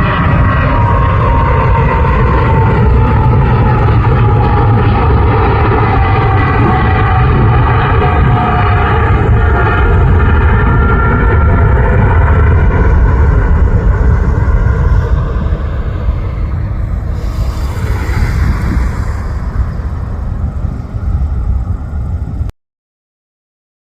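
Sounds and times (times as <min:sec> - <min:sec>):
jet engine deep rumble: 0:00.0 - 0:22.5
high fan tones: 0:00.7 - 0:22.5.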